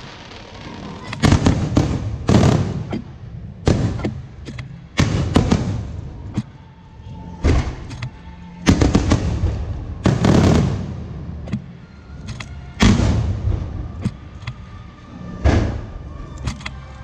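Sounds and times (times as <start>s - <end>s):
firework booms: 0.0s - 6.3s, 8.7s - 11.4s, 12.8s - 14.0s
firework crackling: 0.0s - 6.3s, 8.7s - 11.8s, 12.8s - 14.4s.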